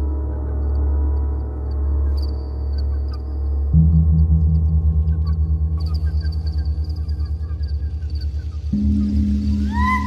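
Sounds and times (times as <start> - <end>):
deep bass drone: 3.8 - 10.0.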